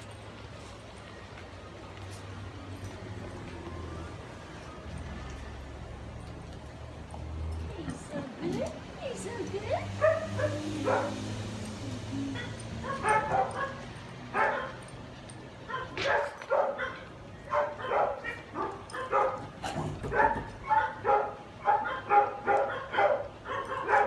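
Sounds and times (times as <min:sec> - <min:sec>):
dog barking and yipping: 0:09.9 - 0:11.7, 0:12.3 - 0:24.0.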